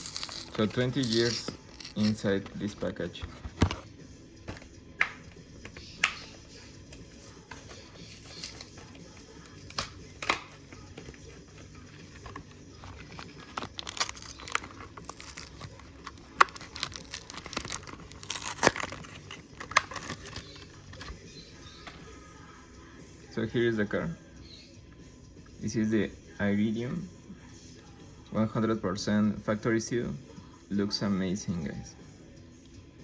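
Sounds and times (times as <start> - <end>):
card tearing: 0.0 - 3.9, 6.9 - 21.2
plastic package crackling: 0.0 - 3.9, 8.0 - 21.2.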